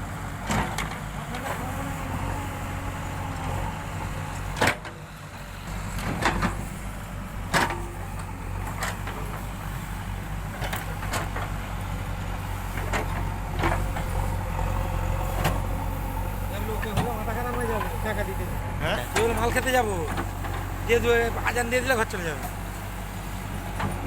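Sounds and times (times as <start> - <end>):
diesel engine running: 0.0 - 24.0.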